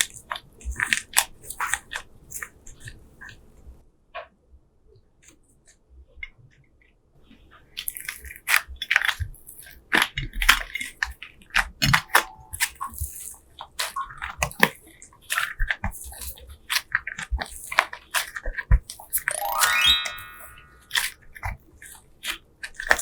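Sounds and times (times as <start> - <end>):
slime squeezed crackling: 7.8 - 23.0.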